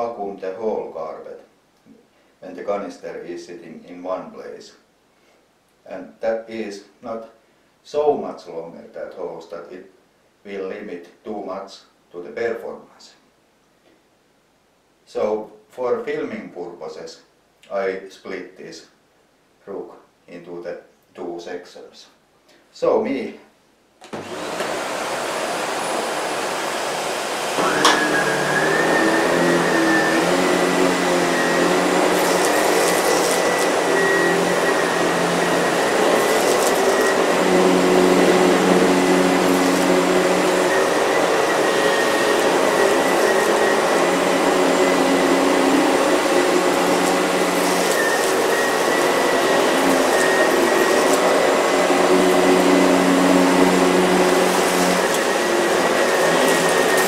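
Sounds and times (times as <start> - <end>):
vacuum cleaner click: 24.0 - 57.0
vacuum cleaner running on rug: 24.1 - 57.0.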